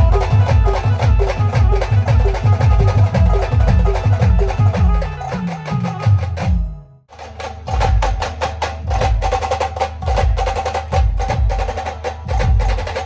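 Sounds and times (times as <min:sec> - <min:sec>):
held melody note: 0:00.0 - 0:07.0
fast dense drumming: 0:00.0 - 0:13.0.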